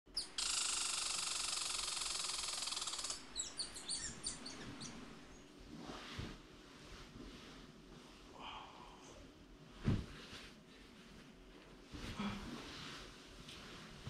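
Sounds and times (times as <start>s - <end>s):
bird buzzing trill: 0.1s - 5.4s.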